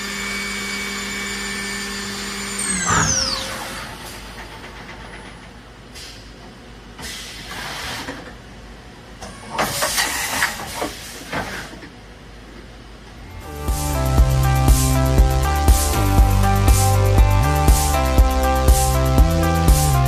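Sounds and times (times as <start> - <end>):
music: 13.3 - 20.0.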